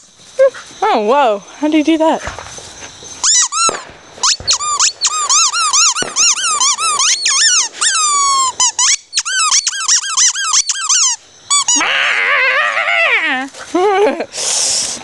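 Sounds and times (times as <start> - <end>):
dog squeaky toy squeaking: 3.2 - 11.8.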